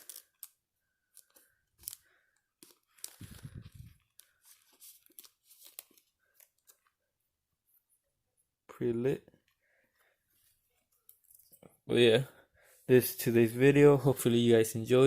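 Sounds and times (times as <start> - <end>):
cards and plastic sleeve rustling: 0.0 - 7.1.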